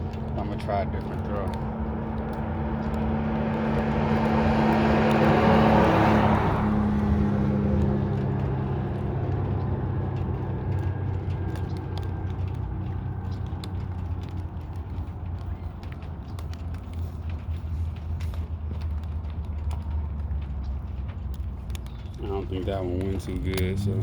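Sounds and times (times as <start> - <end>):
steady low hum: 0.0 - 18.6
vehicle passing by: 0.0 - 24.0.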